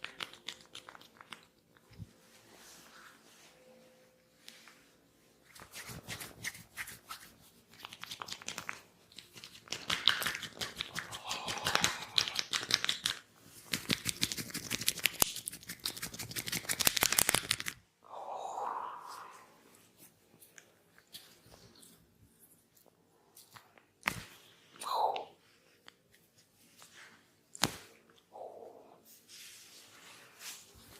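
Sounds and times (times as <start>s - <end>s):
hands crackling through oiled hair: 0.0s - 1.9s, 5.5s - 17.8s.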